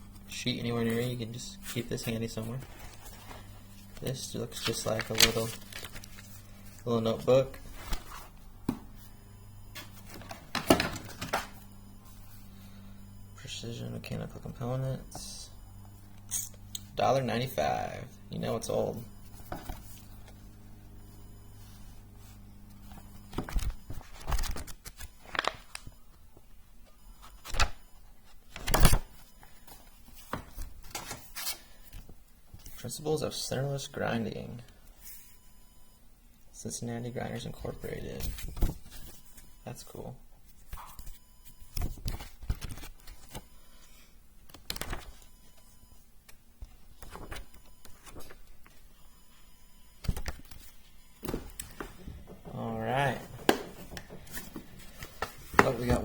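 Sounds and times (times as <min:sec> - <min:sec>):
paper rustling: 0:00.8 - 0:08.3
dull thumps of booklets: 0:51.2 - 0:56.0.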